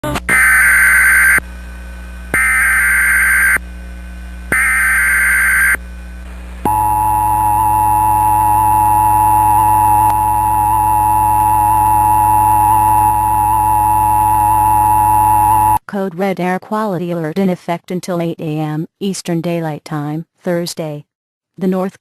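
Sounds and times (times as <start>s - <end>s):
buzzy digital data tones: 4.5s - 5.8s, 6.7s - 15.8s.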